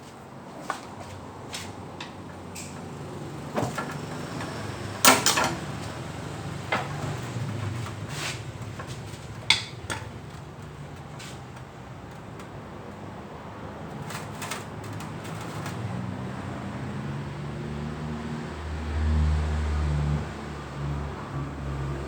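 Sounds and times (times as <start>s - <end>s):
metal tools clanking: 3.6s - 7.8s, 8.4s - 11.1s.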